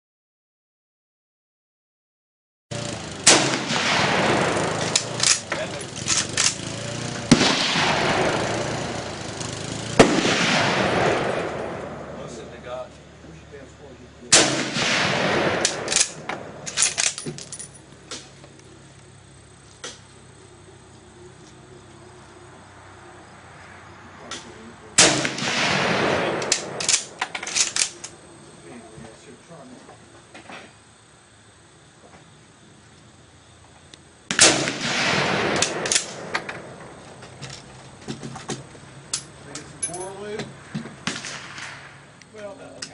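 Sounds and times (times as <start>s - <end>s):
rifle shots with echo: 3.2s - 5.6s, 7.3s - 8.9s, 10.0s - 12.2s, 14.3s - 17.2s, 25.0s - 28.0s, 34.3s - 36.8s, 41.0s - 42.0s
rifle bolt metallic clacks: 15.6s - 18.2s, 26.4s - 28.1s.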